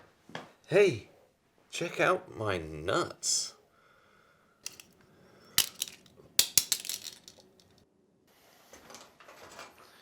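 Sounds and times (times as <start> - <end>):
nut shells clattering and cracking: 4.7 - 5.0, 5.6 - 7.8.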